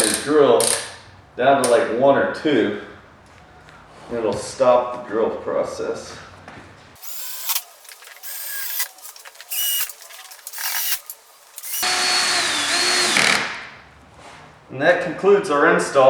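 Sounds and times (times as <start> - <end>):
drill whirring: 7.0 - 13.8.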